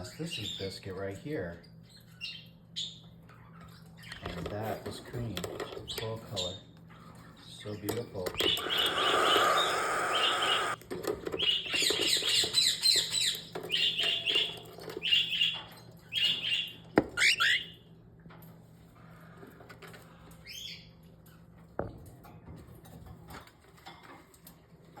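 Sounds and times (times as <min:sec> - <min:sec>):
cockatiels chirping: 0:08.4 - 0:10.8, 0:16.2 - 0:17.7.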